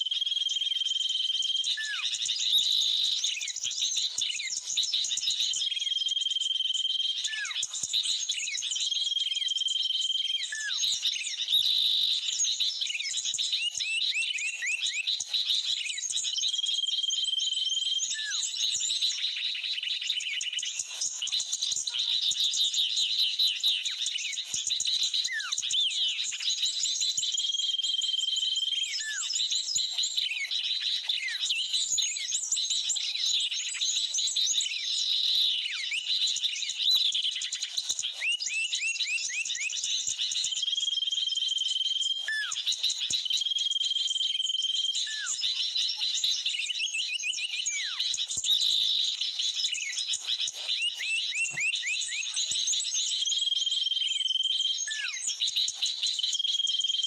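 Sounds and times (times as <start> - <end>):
chorus of small birds chirping: 0.0 - 57.0
whistled bird notes: 0.1 - 56.9
downward-sweeping bird calls: 49.6 - 52.6.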